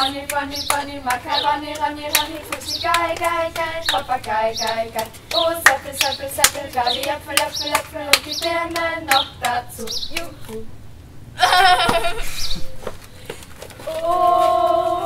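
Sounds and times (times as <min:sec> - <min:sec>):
hand claps: 0:00.0 - 0:10.6
voices singing: 0:00.0 - 0:10.8, 0:13.8 - 0:15.0.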